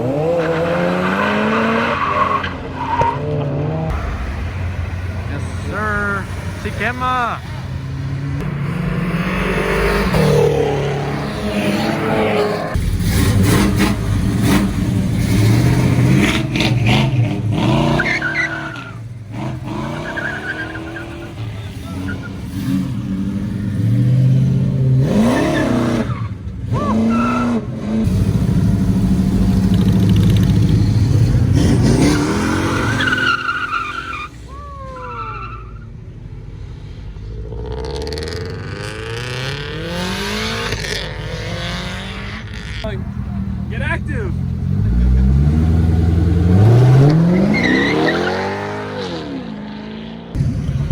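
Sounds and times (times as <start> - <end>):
car engines revving: 0.0 - 50.9.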